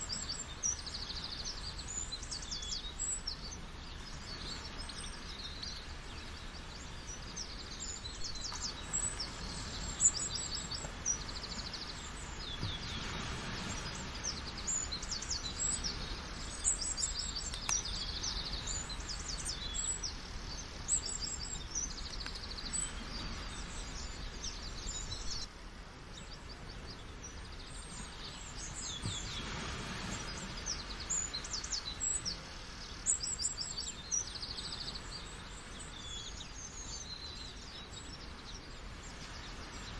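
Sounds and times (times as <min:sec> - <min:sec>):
rushing water: 0:00.0 - 0:39.9
small birds chirping: 0:00.0 - 0:39.9.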